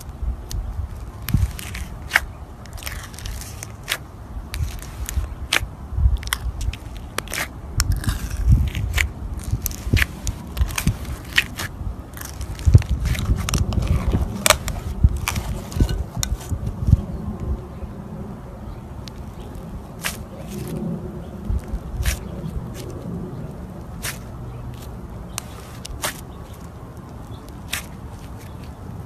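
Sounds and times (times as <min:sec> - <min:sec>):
soft squishing: 0:00.0 - 0:17.6, 0:19.0 - 0:29.0
slime crackling and popping: 0:00.4 - 0:04.0, 0:04.6 - 0:16.9, 0:19.0 - 0:28.8.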